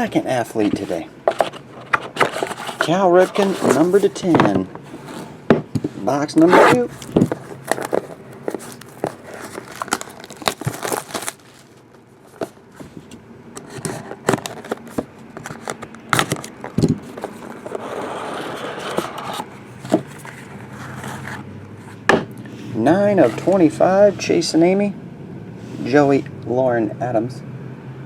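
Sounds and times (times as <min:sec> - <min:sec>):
plastic wrap crinkling and tearing: 0:07.0 - 0:12.6.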